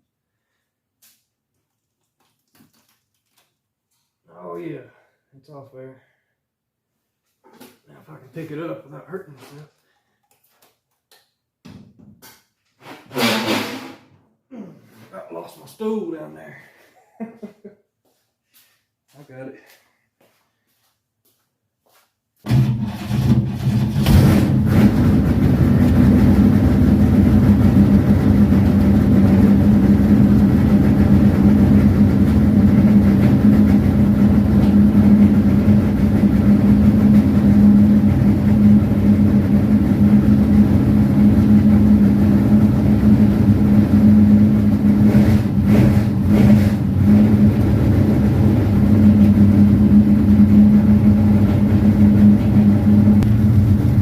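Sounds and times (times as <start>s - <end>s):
vehicle engine droning: 22.5s - 54.0s.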